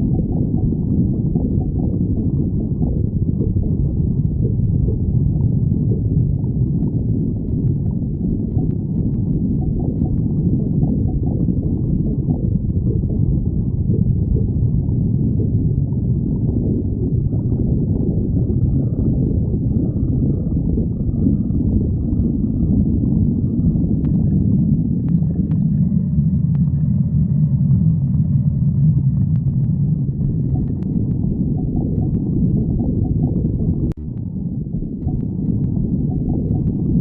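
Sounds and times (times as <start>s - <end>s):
stomach growling: 0.0s - 37.0s.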